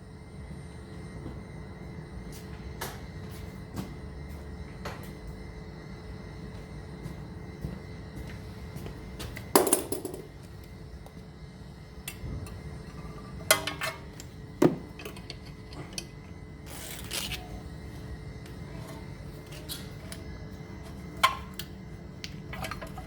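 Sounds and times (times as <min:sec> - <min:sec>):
metal clinks and knocks: 0:09.6 - 0:10.3.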